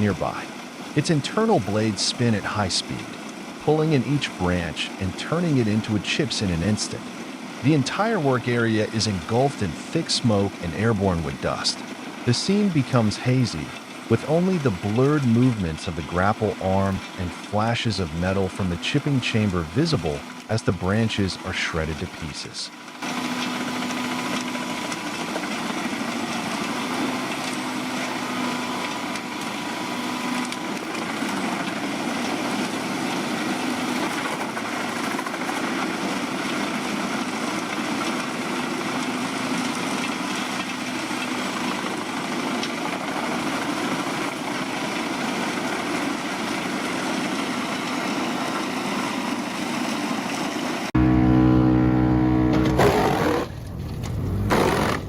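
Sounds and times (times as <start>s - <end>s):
deep engine drone: 0.0s - 22.4s, 50.9s - 55.0s
wood chipper chipping branches: 0.0s - 55.0s.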